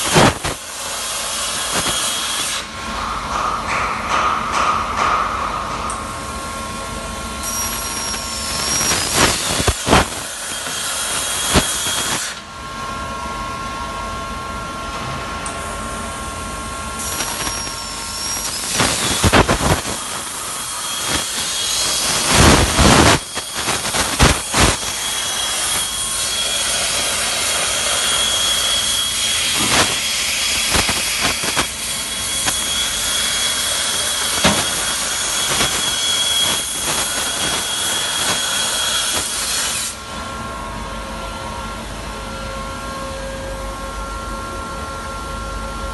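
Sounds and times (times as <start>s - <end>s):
cutting torch gas hiss: 0.0s - 2.7s, 7.4s - 12.4s, 17.0s - 39.9s
thin machine whining tones: 7.3s - 12.2s.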